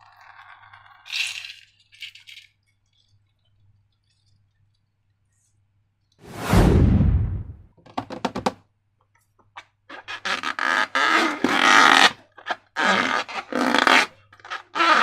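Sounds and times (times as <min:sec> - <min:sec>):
noisy burst: 0:06.3 - 0:07.6.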